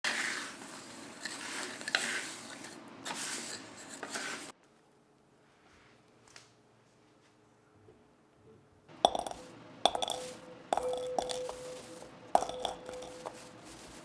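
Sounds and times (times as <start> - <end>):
dry rustling and scraping: 0.0 - 4.6, 9.2 - 14.0.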